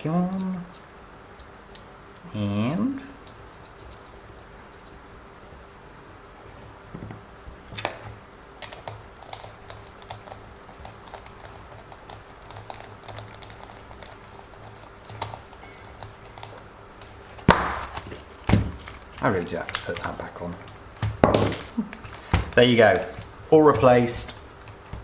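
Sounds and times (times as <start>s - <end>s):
plastic parts clicking and tapping: 17.9s - 25.0s.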